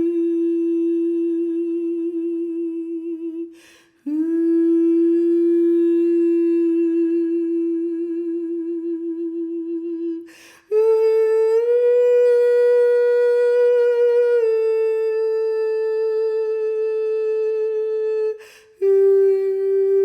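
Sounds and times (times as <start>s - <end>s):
person humming long notes: 0.0s - 20.0s
person breathing: 3.5s - 4.1s, 10.2s - 10.7s, 18.4s - 18.8s.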